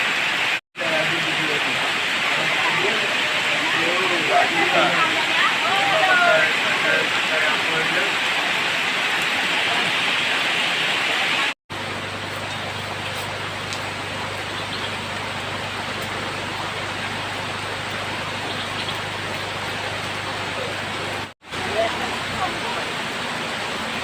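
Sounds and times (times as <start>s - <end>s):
rushing water: 0.0s - 24.0s.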